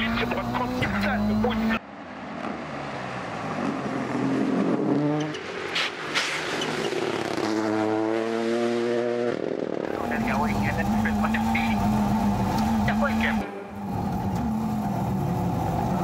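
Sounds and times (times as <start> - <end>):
rally car engine accelerating: 0.0 - 1.8, 6.6 - 16.0.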